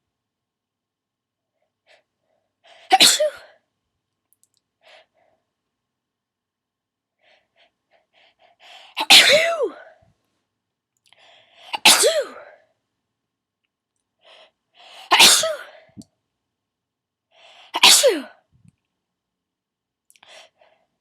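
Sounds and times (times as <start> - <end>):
person sneezing: 2.7 - 3.6, 8.9 - 10.0, 11.6 - 12.6, 15.0 - 16.0, 17.8 - 18.4.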